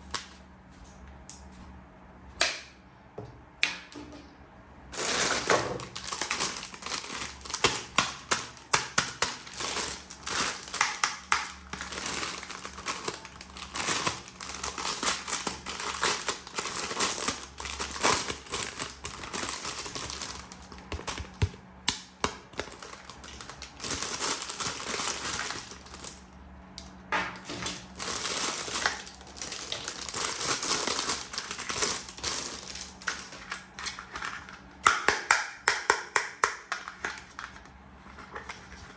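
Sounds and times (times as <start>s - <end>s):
plastic packaging crinkling: 4.9s - 21.6s, 22.3s - 26.4s, 27.4s - 34.6s.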